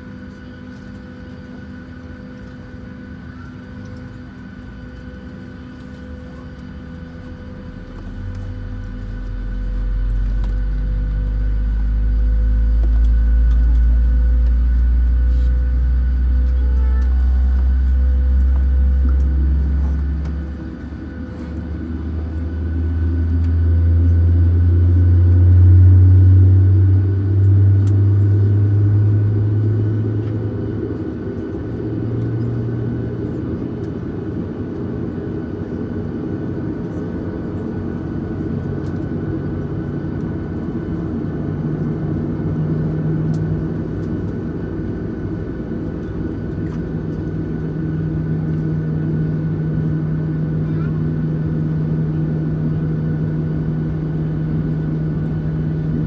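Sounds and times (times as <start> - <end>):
aircraft cabin rumble and hum: 0.0 - 56.0
deep hum rising in pitch: 6.6 - 56.0.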